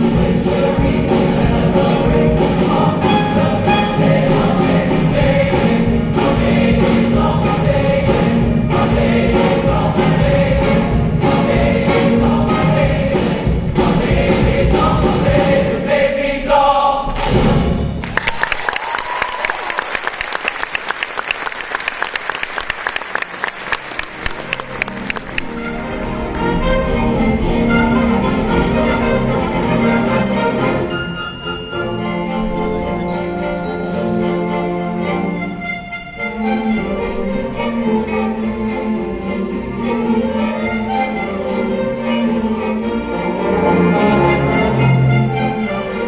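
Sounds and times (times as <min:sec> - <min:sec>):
choir singing with instruments: 0:00.0 - 0:18.1, 0:23.4 - 0:46.0
audience applause: 0:18.0 - 0:26.3.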